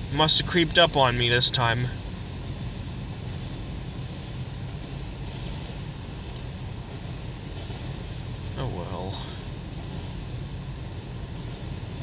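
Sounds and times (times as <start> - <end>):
train wheels rumbling on rails: 9.4 - 12.0.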